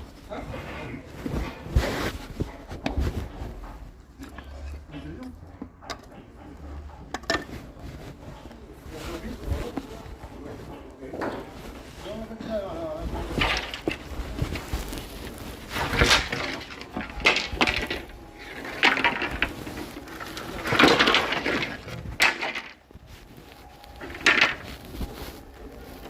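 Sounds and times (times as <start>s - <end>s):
wood clattering and knocking: 13.2s - 14.9s, 15.7s - 23.0s, 24.0s - 25.1s.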